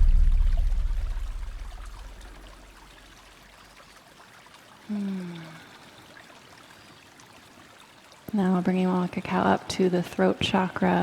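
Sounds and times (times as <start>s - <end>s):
low drone: 0.0s - 2.3s.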